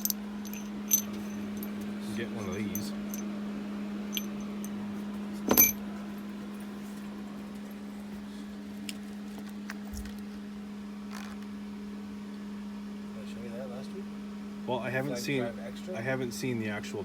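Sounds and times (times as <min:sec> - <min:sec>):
sharp metallic clink: 0:00.0 - 0:01.8, 0:04.2 - 0:04.7, 0:05.5 - 0:05.8
low electrical hum: 0:00.0 - 0:17.0.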